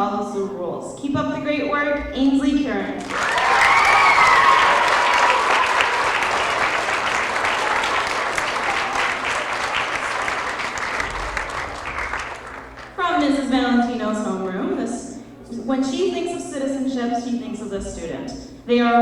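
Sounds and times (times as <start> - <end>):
children applauding: 3.0 - 13.0.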